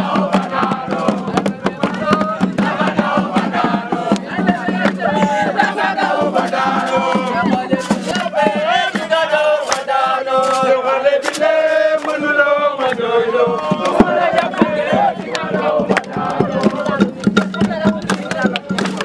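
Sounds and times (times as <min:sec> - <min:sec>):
group of voices chanting: 0:00.0 - 0:19.0
sharp percussive beats: 0:00.0 - 0:19.0.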